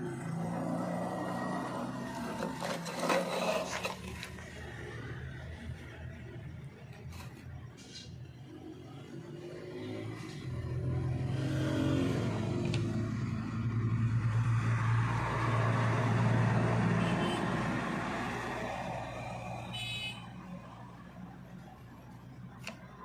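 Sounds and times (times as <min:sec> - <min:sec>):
vehicle engine passing by: 0:00.0 - 0:06.1, 0:08.6 - 0:19.7.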